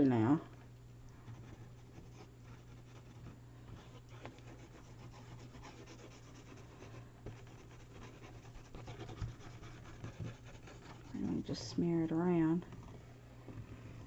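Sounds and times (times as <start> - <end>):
steady low hum: 0.0 - 14.0
paper rubbing and scratching: 1.3 - 11.6.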